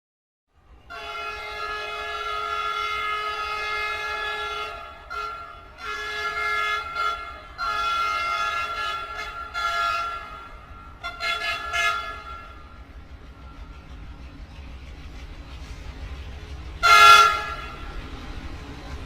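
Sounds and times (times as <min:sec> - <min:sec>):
train horn blasts: 0:00.9 - 0:12.8, 0:16.8 - 0:18.0.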